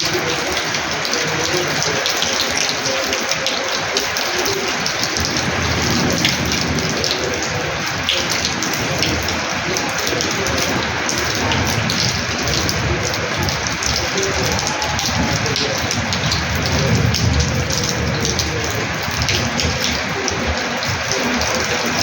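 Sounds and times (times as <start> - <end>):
heavy rain splashing on tiles: 0.0 - 22.0.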